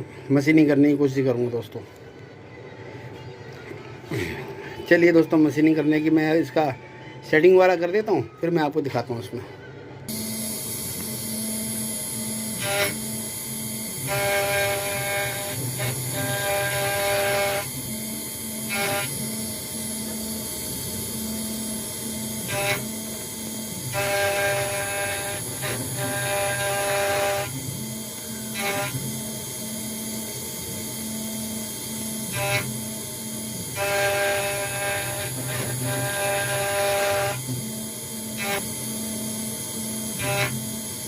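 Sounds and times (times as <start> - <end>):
cnc router motors whining: 10.0 - 41.0.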